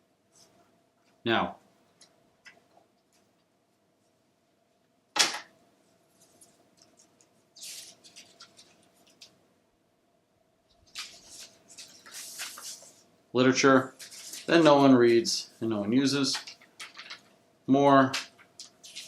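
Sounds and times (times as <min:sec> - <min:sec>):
paper rustling and scraping: 0:06.1 - 0:09.3, 0:10.8 - 0:13.1, 0:13.7 - 0:15.3, 0:16.2 - 0:17.3, 0:18.1 - 0:19.0.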